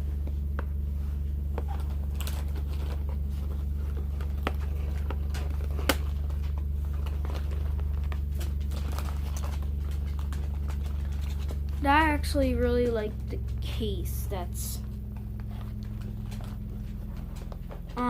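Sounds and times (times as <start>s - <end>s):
steady low hum: 0.0s - 18.0s
packaging crinkling: 1.6s - 11.8s.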